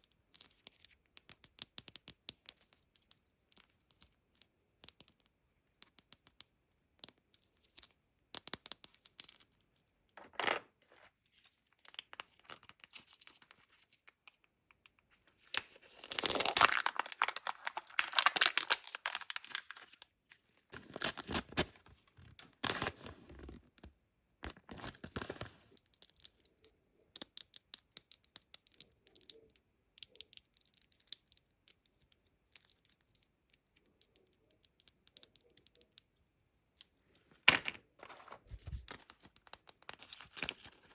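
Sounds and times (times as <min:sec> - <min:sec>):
plastic wrappers tearing and crinkling: 0:15.4 - 0:20.0.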